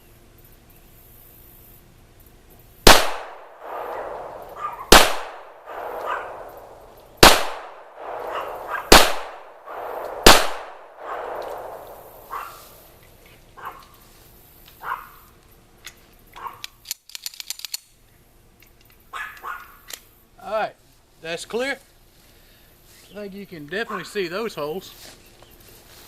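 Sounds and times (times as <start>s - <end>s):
gunshots with echo: 2.9s - 12.5s.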